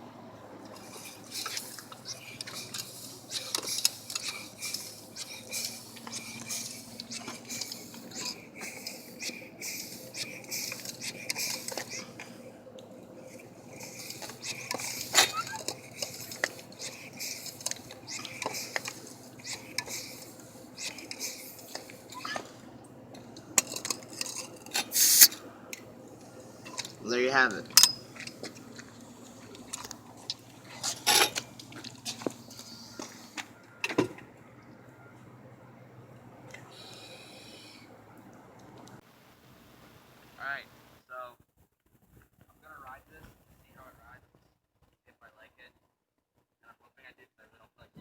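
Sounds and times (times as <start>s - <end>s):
hand tools clinking on bicycle parts: 0.7s - 12.3s, 13.3s - 22.6s, 23.2s - 27.0s, 27.6s - 34.1s.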